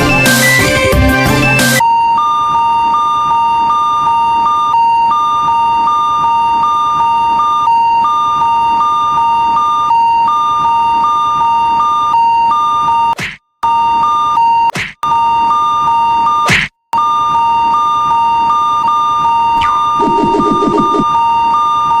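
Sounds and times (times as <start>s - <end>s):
music: 0.0s - 3.0s.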